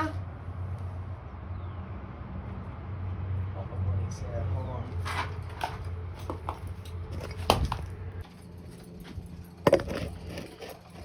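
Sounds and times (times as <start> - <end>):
hard objects clinking: 8.2 - 11.0.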